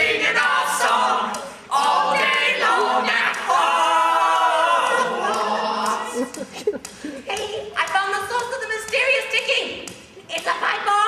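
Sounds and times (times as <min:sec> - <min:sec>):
voices singing a cappella: 0:00.0 - 0:06.5.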